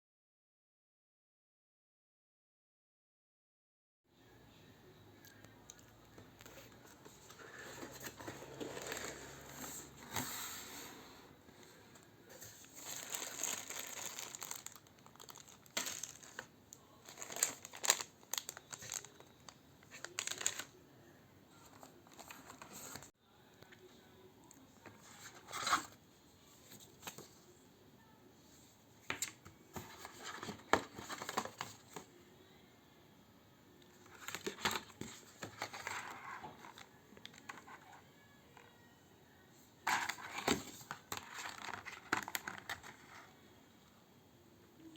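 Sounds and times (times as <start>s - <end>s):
packaging crinkling and rustling: 7.3s - 9.6s, 12.4s - 20.7s, 29.8s - 32.0s, 39.9s - 43.2s.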